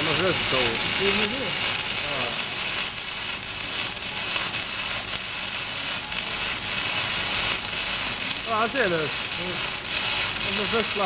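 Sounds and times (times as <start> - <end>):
welding arc crackling hiss: 0.0 - 11.0.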